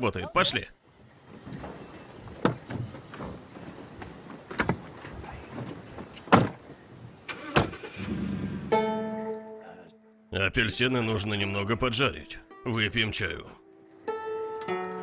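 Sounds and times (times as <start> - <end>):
knocks and thumps: 2.3 - 6.7.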